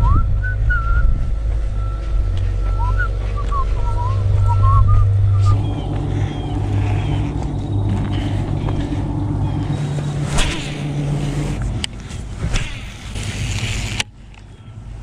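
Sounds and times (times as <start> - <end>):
motor humming: 0.0 - 14.1.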